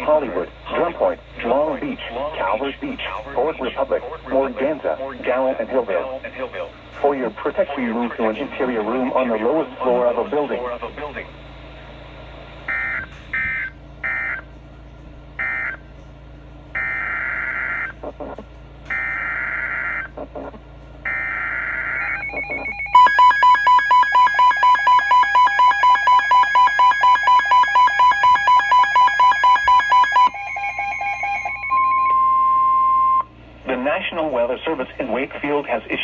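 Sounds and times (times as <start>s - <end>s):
rapid electronic beeping: 19.0s - 32.2s
steady alert tone: 22.0s - 33.2s.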